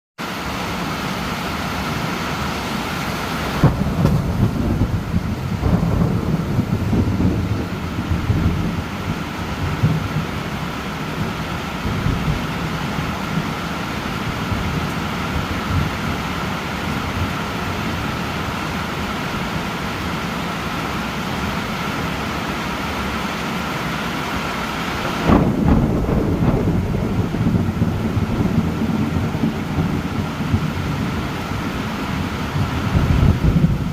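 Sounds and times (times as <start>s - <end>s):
steady rain: 0.2s - 33.9s
thunderclap and rolling thunder: 3.5s - 19.8s, 25.0s - 33.9s.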